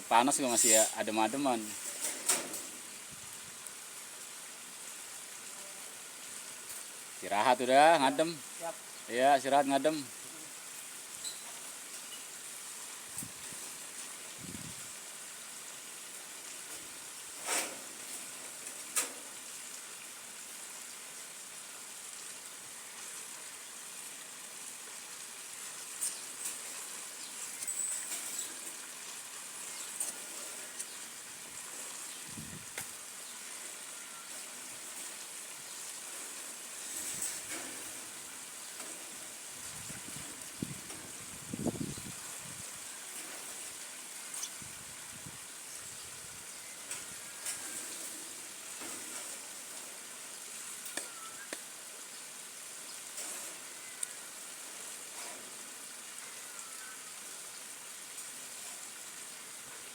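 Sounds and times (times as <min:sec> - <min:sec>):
high-pitched outdoor hiss: 0:00.0 - 0:59.9.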